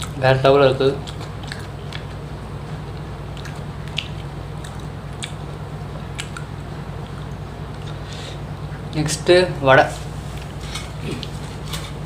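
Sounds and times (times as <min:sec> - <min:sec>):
person chewing food: 0:00.0 - 0:00.2, 0:01.0 - 0:08.8, 0:10.3 - 0:12.0
steady low hum: 0:00.0 - 0:12.0
soft mouth clicks: 0:03.4 - 0:05.4, 0:06.1 - 0:06.5.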